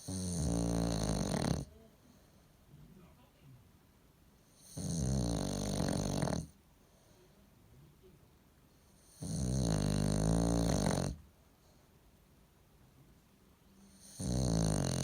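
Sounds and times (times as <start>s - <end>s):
dog snoring: 0.0s - 1.7s, 4.4s - 6.6s, 8.9s - 11.2s, 13.8s - 15.0s.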